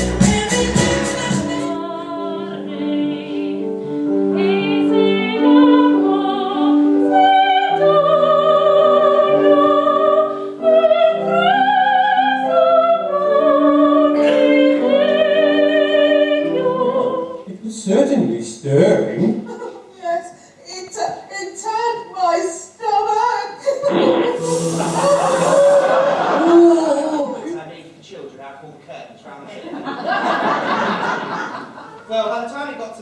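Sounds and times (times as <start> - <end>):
instrumental accompaniment: 0.0 - 17.5
operatic solo singing: 23.9 - 27.4.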